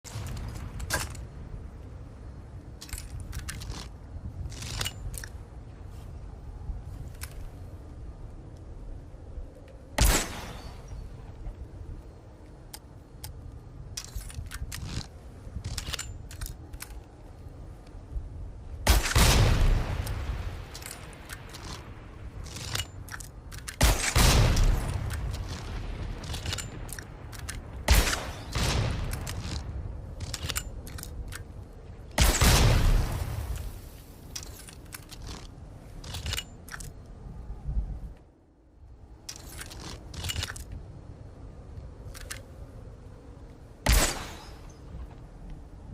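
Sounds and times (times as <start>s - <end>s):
crossbow blasts: 10.0s - 11.0s, 43.8s - 44.8s.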